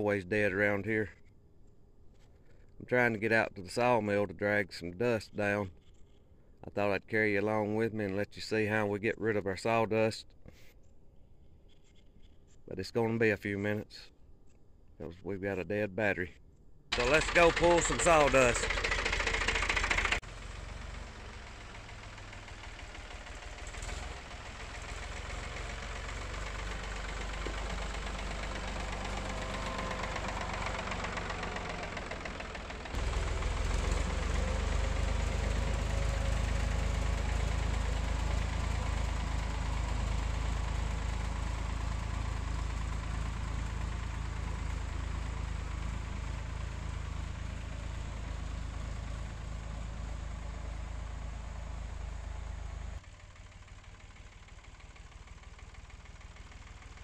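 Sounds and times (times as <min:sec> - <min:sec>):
vehicle engine running: 0:16.9 - 0:57.0.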